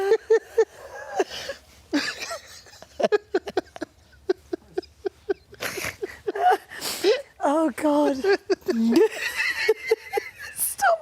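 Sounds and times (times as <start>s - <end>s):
adults laughing breathlessly: 0.0s - 7.0s.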